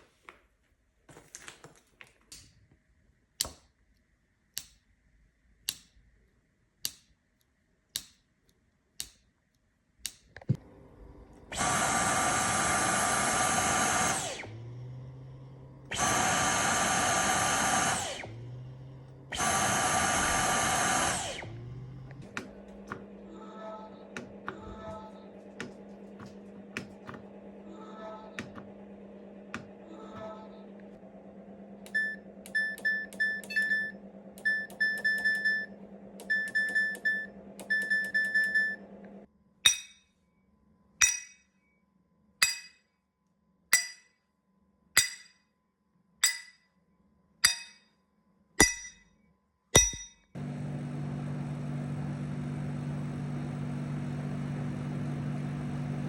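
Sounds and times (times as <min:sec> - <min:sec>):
steady hum with clicks: 0:14.0 - 0:39.3
sharp ringing clinks: 0:49.8 - 0:50.2.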